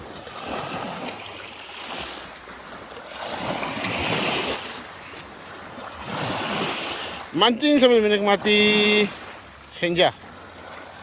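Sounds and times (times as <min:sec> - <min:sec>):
waves washing: 0:00.0 - 0:11.0.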